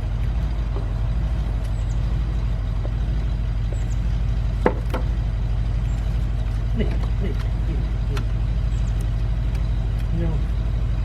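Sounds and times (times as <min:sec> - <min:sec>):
low mechanical rumble: 0:00.0 - 0:11.0
sharp knocks: 0:04.6 - 0:05.2.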